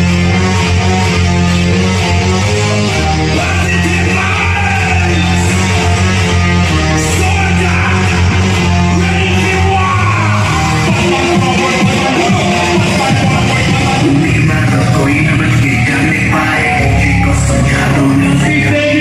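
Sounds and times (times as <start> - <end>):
person singing: 3.3 - 19.0
long held bass notes: 12.8 - 19.0.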